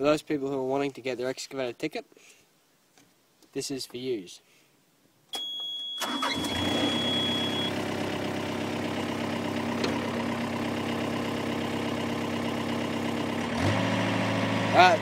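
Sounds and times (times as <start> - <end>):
high warning tone: 5.4 - 7.8
diesel engine starting and idling: 6.0 - 15.0.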